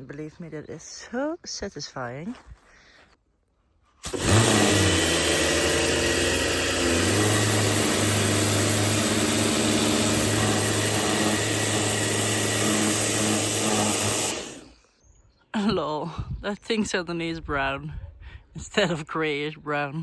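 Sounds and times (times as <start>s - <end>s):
pressure washer motor hum: 4.0s - 14.7s
water spray hissing: 4.0s - 14.7s.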